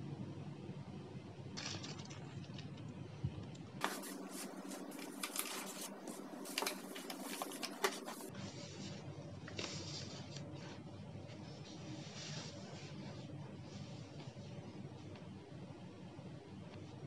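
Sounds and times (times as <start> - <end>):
rustling: 3.8 - 9.0.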